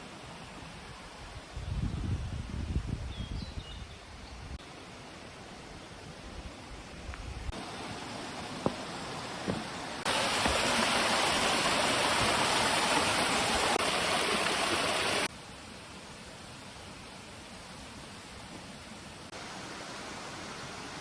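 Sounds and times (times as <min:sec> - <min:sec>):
quiet outdoor hiss: 0:00.0 - 0:21.0
stream water rushing: 0:07.5 - 0:21.0.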